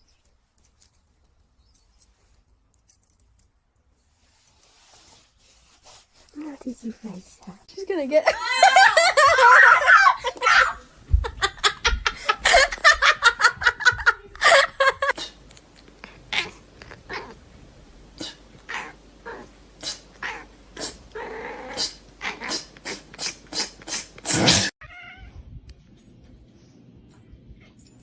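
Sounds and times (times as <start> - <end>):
cat crying: 18.7 - 22.8, 24.8 - 25.4.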